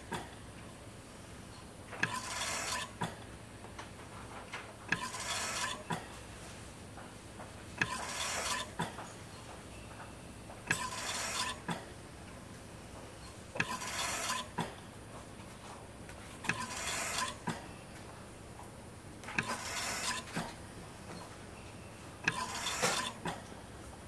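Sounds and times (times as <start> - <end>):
steady low hum: 0.0 - 24.0
ventilator valve click: 1.5 - 6.2, 7.0 - 14.9, 16.4 - 21.3, 22.1 - 23.6.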